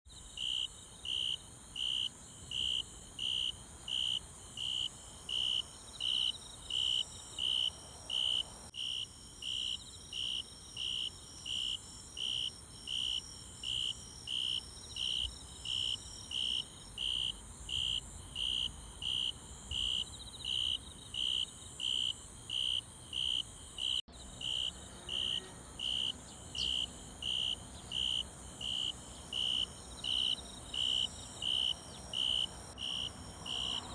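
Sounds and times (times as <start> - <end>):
cricket chirping: 0.1 - 33.9
faint high insect hum: 0.1 - 33.9.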